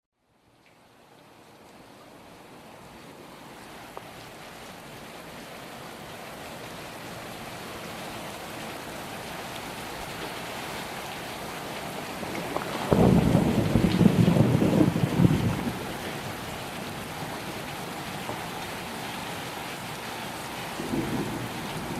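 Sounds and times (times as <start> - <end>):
steady rain hiss: 0.2 - 21.9
thunder clap rumbling: 12.2 - 17.6, 20.7 - 21.9.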